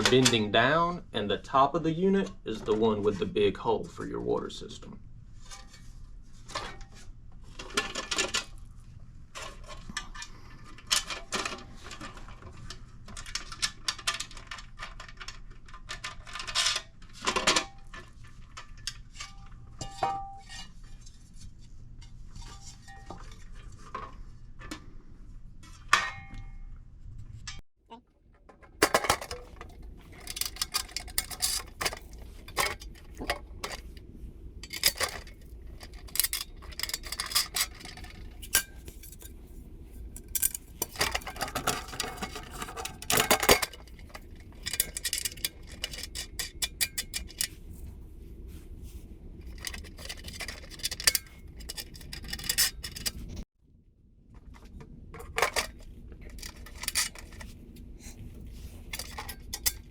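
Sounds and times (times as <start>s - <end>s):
metal parts clinking and scraping: 5.4s - 8.6s, 9.4s - 21.2s, 28.5s - 47.8s, 49.4s - 53.4s, 55.2s - 59.9s.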